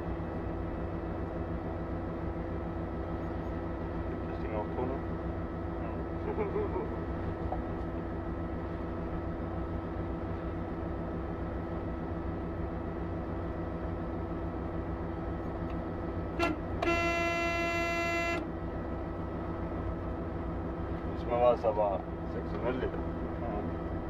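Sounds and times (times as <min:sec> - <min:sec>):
vehicle engine drone: 0:00.0 - 0:24.0
vehicle horn: 0:16.4 - 0:18.5.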